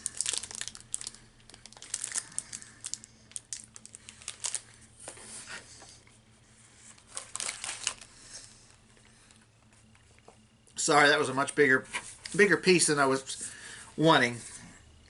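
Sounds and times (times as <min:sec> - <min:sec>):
plastic wrapper crinkling: 0:00.0 - 0:04.9, 0:07.0 - 0:08.1.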